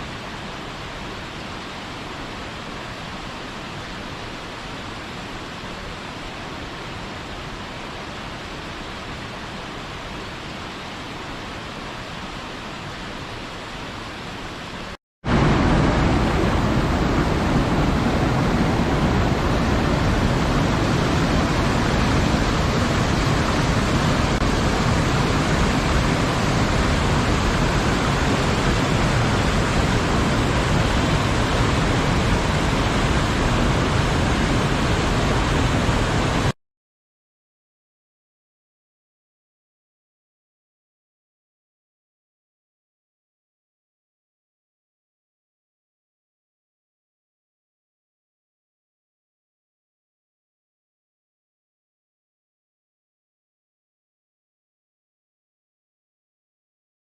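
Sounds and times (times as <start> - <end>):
waterfall roaring: 0.0 - 36.6.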